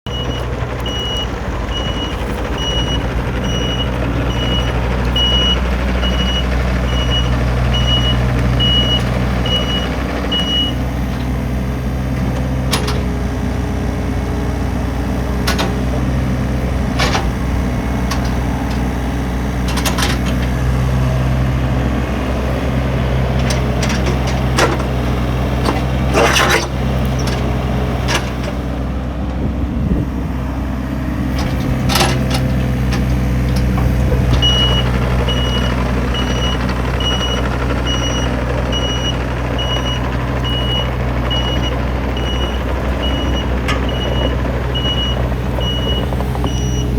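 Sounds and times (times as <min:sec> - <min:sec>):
diesel engine running: 0:00.0 - 0:46.9
travel alarm beeping: 0:00.1 - 0:10.8, 0:34.4 - 0:46.9
machine clanks and knocks: 0:12.2 - 0:13.2, 0:31.4 - 0:35.5, 0:38.8 - 0:46.8.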